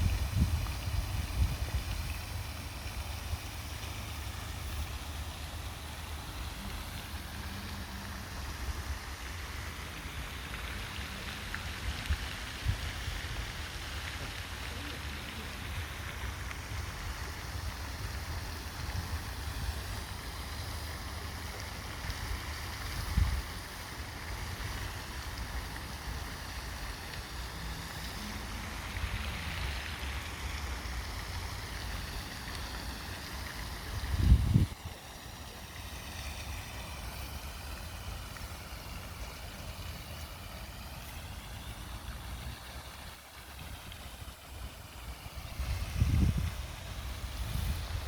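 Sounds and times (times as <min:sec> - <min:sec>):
wind rumbling on microphone: 0:00.0 - 0:03.8, 0:22.0 - 0:35.2, 0:41.9 - 0:48.0
rush of lake water: 0:00.0 - 0:48.0.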